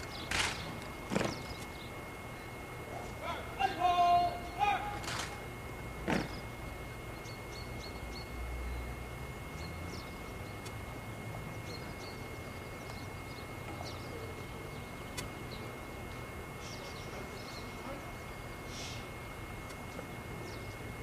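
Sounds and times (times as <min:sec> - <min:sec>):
faint bird chirps: 0:06.2 - 0:10.7, 0:11.5 - 0:15.8, 0:16.6 - 0:19.1.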